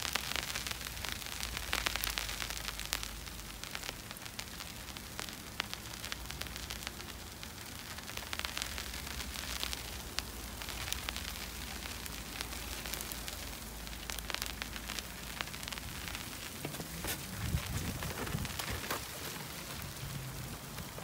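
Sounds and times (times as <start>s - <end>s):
snow ticking on an umbrella: 0.0s - 21.0s.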